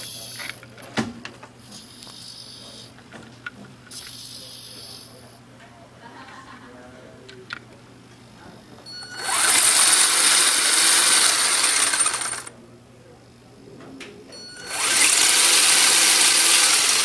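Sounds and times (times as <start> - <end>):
toy car motor whining: 9.1 - 12.5, 14.6 - 17.0.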